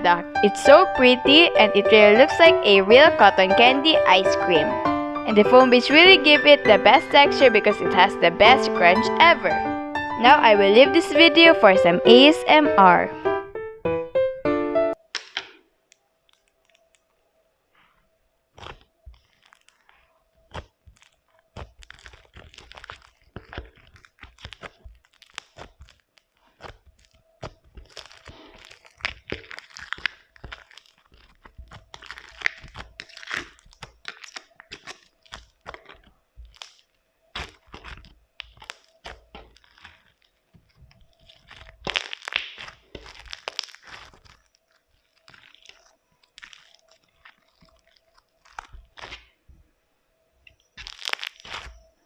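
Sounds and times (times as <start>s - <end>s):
foam slime crunching: 17.8s - 49.6s, 50.5s - 52.0s.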